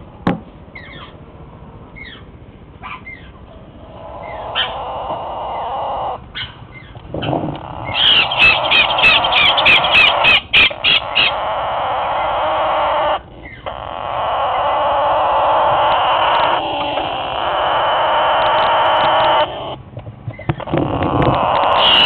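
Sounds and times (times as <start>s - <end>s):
parrot chicks calling: 0.8s - 1.2s, 2.0s - 22.0s.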